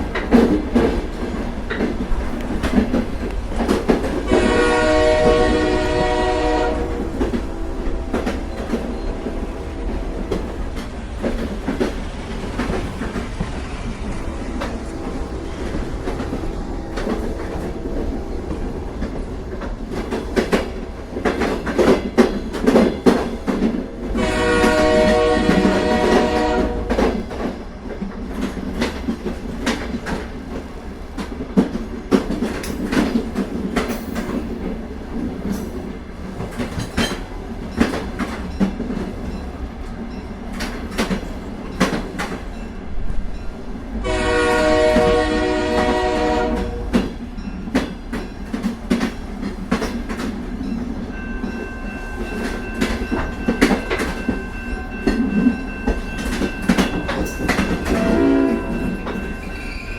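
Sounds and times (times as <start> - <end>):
train rumble: 0.0 - 59.9
train wheels clacking on rails: 0.0 - 59.9
train horn: 4.2 - 10.8, 13.7 - 19.2, 23.9 - 27.4, 44.0 - 47.2, 57.1 - 59.9.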